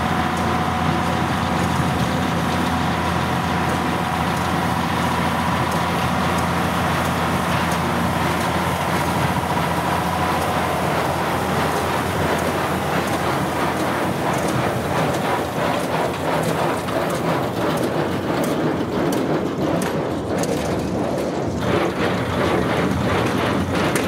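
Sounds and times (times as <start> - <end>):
tractor engine droning: 0.0 - 24.0
baler rattling and clicking: 12.3 - 24.0.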